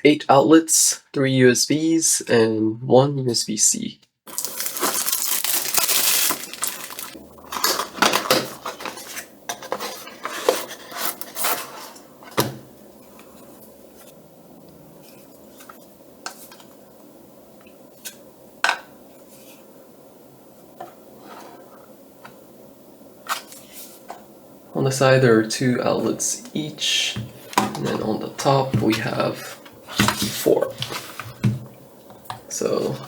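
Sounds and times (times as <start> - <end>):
plastic clattering and rustling: 4.3 - 12.7, 27.2 - 32.4.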